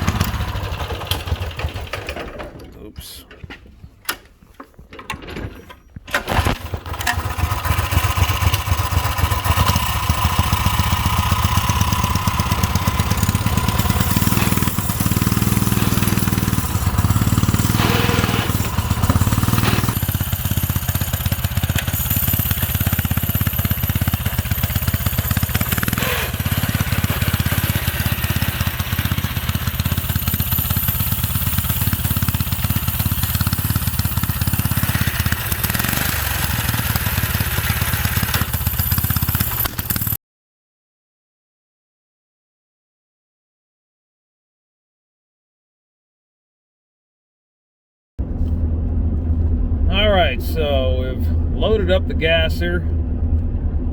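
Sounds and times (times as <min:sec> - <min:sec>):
small gasoline engine running: 0:00.0 - 0:02.3, 0:06.4 - 0:40.2.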